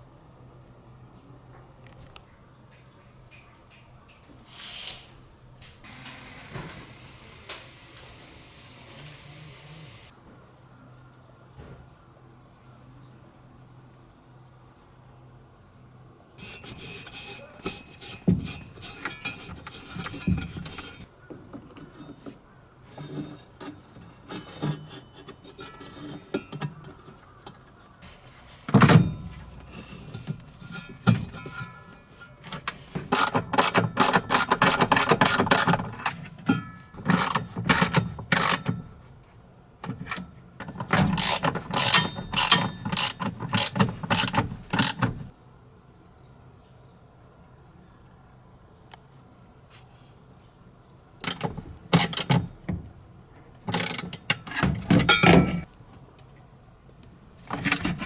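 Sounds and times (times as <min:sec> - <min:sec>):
tool clicks and knocks: 0:28.7 - 0:38.9, 0:39.8 - 0:45.3, 0:51.2 - 0:52.9, 0:53.7 - 0:55.7, 0:57.5 - 0:58.0
ratchet wrench clicking: 0:33.1 - 0:36.1, 0:37.1 - 0:38.6, 0:41.0 - 0:45.1, 0:53.7 - 0:54.6.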